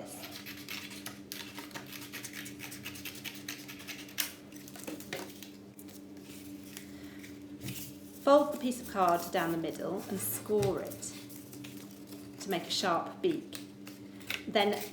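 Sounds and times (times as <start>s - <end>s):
scissors cutting card: 0.2s - 5.0s, 13.4s - 14.9s.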